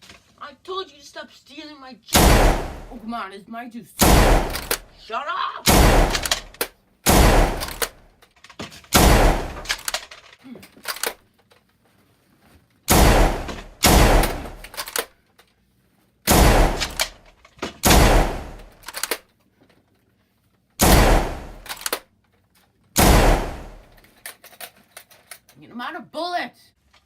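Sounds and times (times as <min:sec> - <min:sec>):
echoing gunshots: 0:02.1 - 0:03.0, 0:04.0 - 0:05.0, 0:05.7 - 0:08.1, 0:08.9 - 0:10.0, 0:12.9 - 0:14.8, 0:16.3 - 0:17.2, 0:17.8 - 0:19.1, 0:20.8 - 0:22.0, 0:23.0 - 0:23.9.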